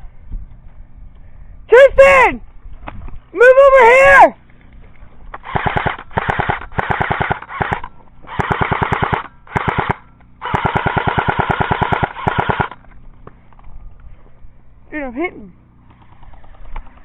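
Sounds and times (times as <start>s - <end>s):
airsoft rifle firing bursts: 5.4s - 12.8s.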